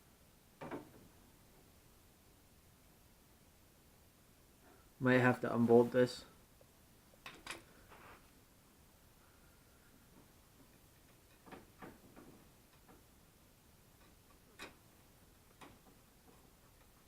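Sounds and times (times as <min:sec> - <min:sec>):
faint clicks and taps of tools: 0:15.4 - 0:17.0.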